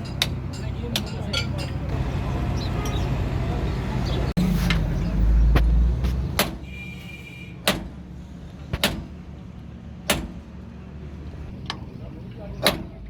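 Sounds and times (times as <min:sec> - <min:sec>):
sharp knocks: 0:07.6 - 0:08.0, 0:08.7 - 0:09.2.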